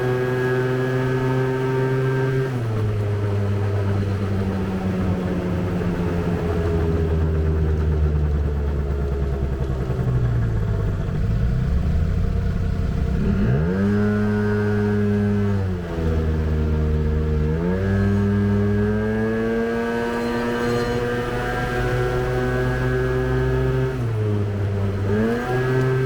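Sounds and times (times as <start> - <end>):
scooter engine idling: 2.8 - 13.3.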